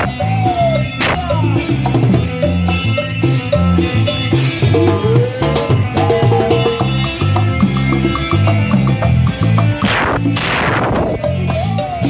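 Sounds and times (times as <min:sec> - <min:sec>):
bass line: 0:00.0 - 0:12.0
drum kit with cymbals: 0:00.0 - 0:12.0
sliding lead melody: 0:00.0 - 0:12.0.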